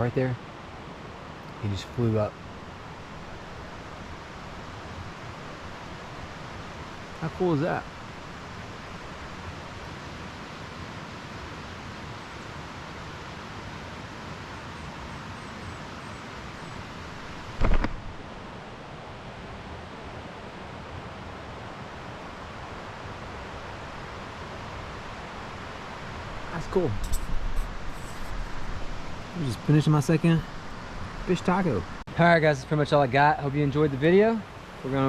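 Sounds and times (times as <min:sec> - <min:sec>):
outdoor rushing noise: 0:17.4 - 0:18.6
short thump: 0:17.6 - 0:18.1.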